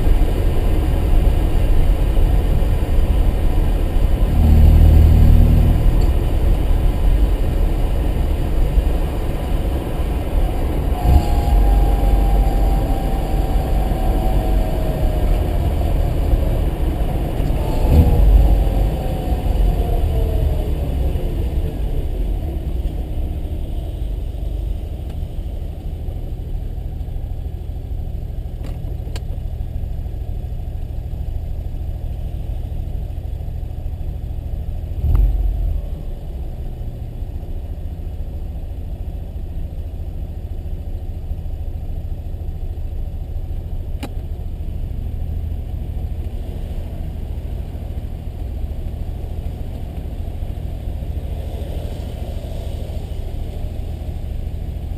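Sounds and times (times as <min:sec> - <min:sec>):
rotary engine running: 0:04.0 - 0:23.0.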